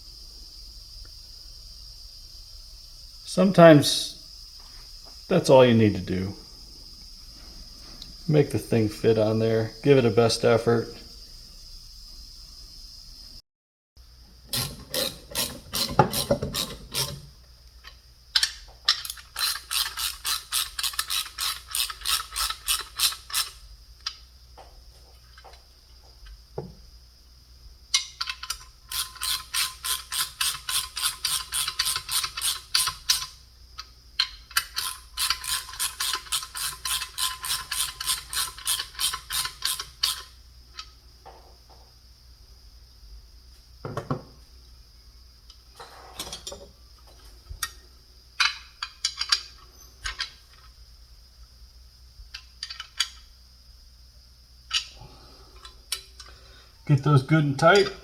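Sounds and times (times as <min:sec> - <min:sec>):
parts knocking: 0:14.5 - 0:23.5, 0:24.6 - 0:26.8, 0:43.8 - 0:44.4
ratchet wrench clicking: 0:14.5 - 0:24.2, 0:27.9 - 0:40.9, 0:48.4 - 0:50.3, 0:52.3 - 0:53.2, 0:54.7 - 0:54.9.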